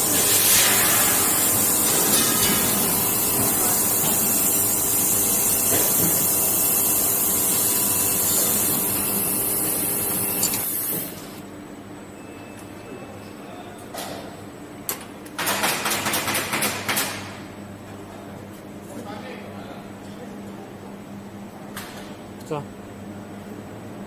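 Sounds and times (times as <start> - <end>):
laser welding machine hissing: 0.0 - 11.4.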